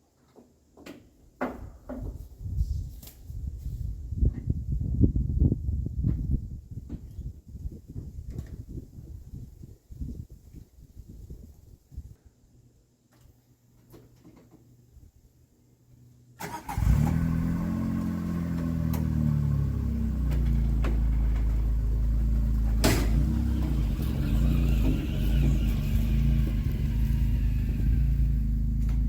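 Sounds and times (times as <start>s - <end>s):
utility vehicle engine starting: 16.4s - 29.0s
sharp clunk: 22.7s - 23.4s.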